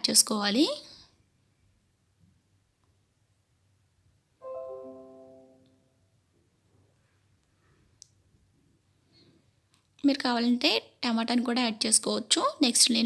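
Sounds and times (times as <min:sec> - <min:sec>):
bell-like chime: 0:04.4 - 0:06.0.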